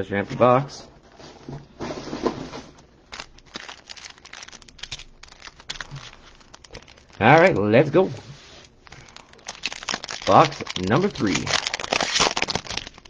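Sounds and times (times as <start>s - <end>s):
card wrappers crinkling and tearing: 3.1s - 13.0s.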